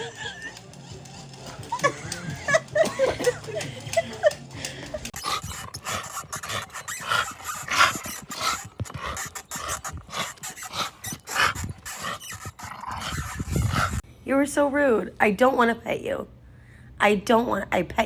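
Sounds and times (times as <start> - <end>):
dog making short breathy sounds: 5.2 - 14.0.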